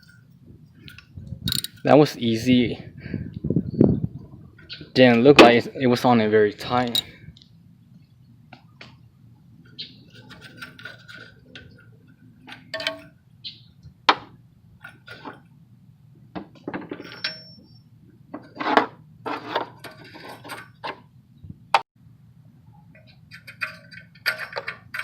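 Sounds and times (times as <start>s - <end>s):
metal hand tools clinking: 1.5s - 1.8s.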